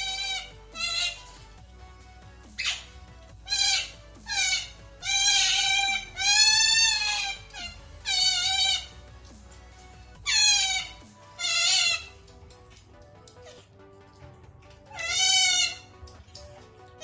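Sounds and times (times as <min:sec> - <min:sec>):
animal bleating cries: 0:00.0 - 0:01.4, 0:03.5 - 0:09.0, 0:10.2 - 0:12.1, 0:14.9 - 0:15.9.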